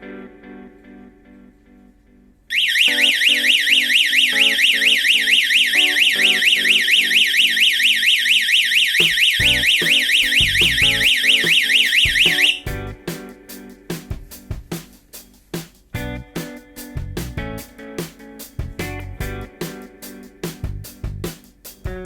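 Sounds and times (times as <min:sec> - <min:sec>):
warbling alarm siren: 0:02.5 - 0:12.6.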